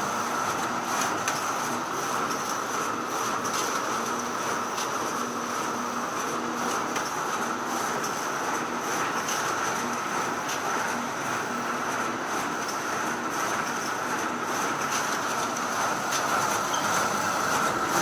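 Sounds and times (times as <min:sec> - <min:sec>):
photocopier whirring: 0:00.0 - 0:18.0.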